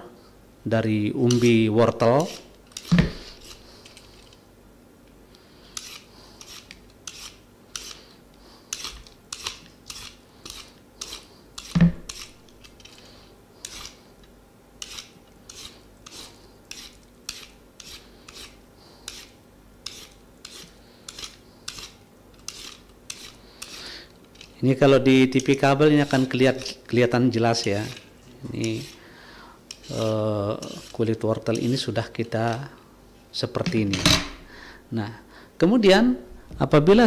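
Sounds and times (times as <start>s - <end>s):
blade scraping carrot skin: 2.2s - 4.3s, 5.7s - 14.1s, 14.8s - 24.6s, 27.6s - 29.0s, 29.7s - 31.9s.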